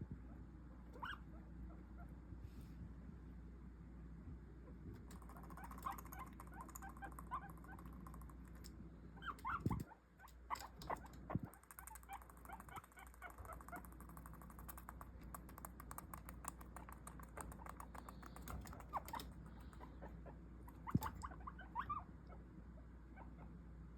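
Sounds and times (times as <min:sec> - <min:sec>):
guinea pigs squeaking: 0:00.3 - 0:02.2, 0:04.9 - 0:23.6
scratchy clicking and rustling: 0:09.4 - 0:19.8.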